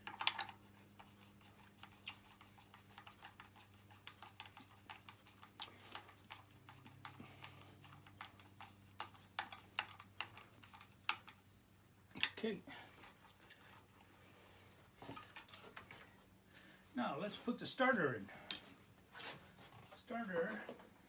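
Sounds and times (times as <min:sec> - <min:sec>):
hand tools clicking on metal: 0:18.5 - 0:18.8.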